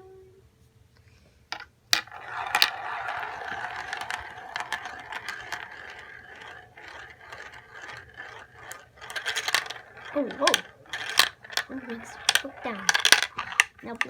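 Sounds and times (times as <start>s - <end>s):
marbles rattling down track: 2.0s - 14.0s.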